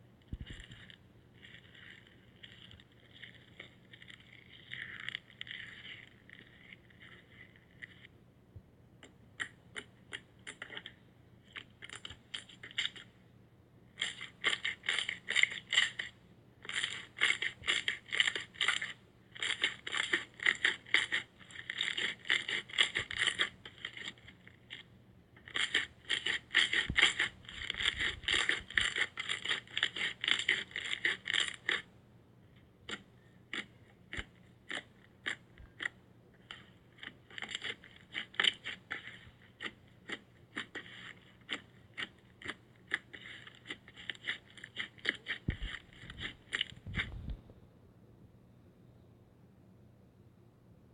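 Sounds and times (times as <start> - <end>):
slime crackling and popping: 14.0 - 16.1, 16.7 - 31.9, 32.9 - 47.2.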